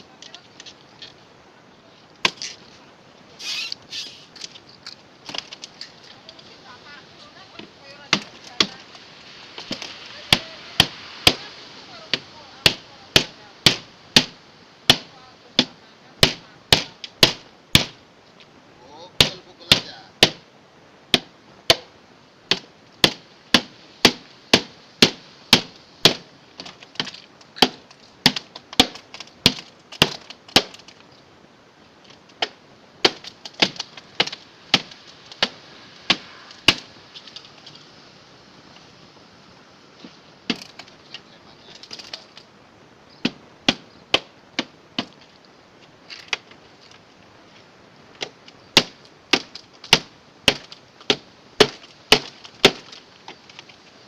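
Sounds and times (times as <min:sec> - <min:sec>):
sharp chopping blows on metal: 0:12.1 - 0:18.0, 0:19.2 - 0:20.4, 0:21.1 - 0:21.9, 0:22.5 - 0:26.2.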